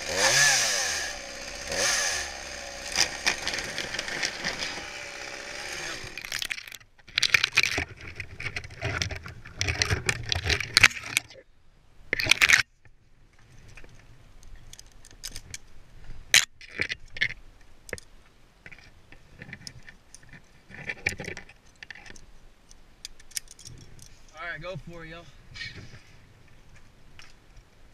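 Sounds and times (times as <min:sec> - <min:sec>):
metal scraping: 0:00.9 - 0:06.7
metal climbing hardware clinking: 0:23.0 - 0:24.4.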